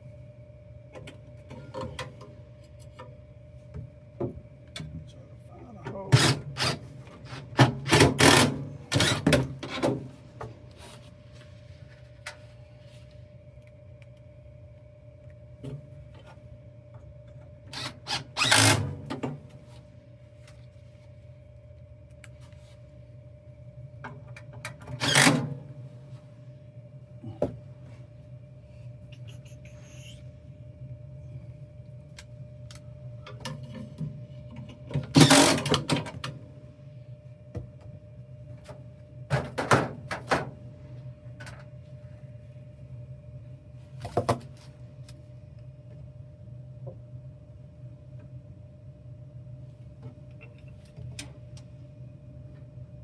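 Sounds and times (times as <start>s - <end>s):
low hum: 25.5s - 35.0s.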